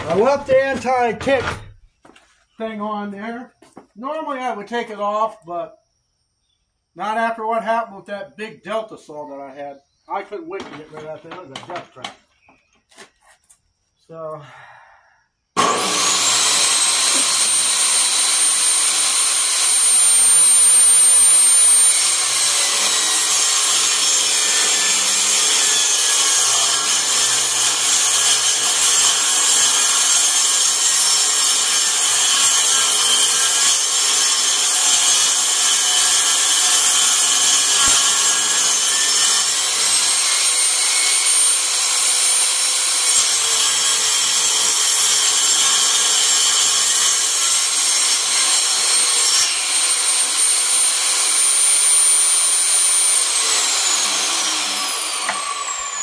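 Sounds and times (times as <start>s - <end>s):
saw cutting wood: 0.0s - 1.7s, 15.6s - 56.0s
table saw whine: 15.5s - 56.0s.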